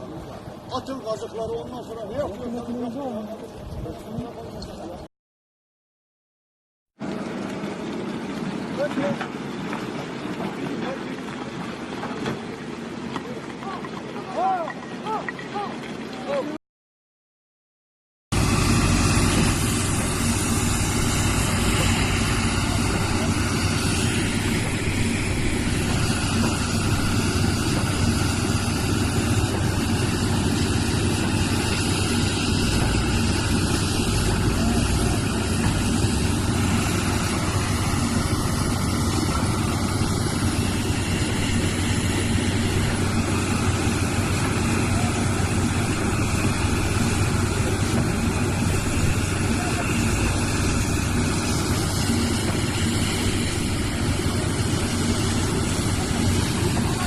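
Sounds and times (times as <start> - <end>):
heavy machine engine humming: 18.4 - 57.0.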